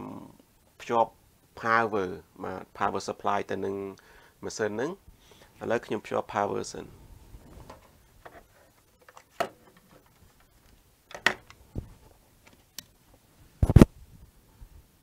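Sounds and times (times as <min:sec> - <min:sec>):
cable clicks and knocks: 0:07.6 - 0:12.9.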